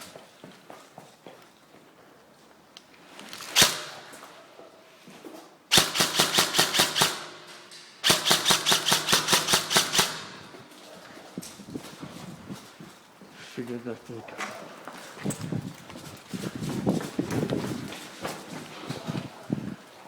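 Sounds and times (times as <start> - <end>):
airsoft gun firing: 3.5 - 4.3, 5.7 - 10.6.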